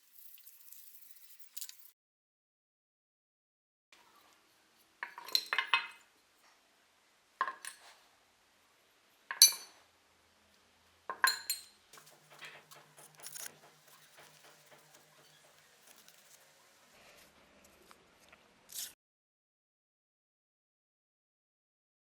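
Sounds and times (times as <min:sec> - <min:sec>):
small metal parts clinking: 0:00.0 - 0:01.9, 0:05.0 - 0:06.0, 0:09.3 - 0:09.8, 0:11.1 - 0:13.5
faint rattling and handling: 0:11.9 - 0:16.5.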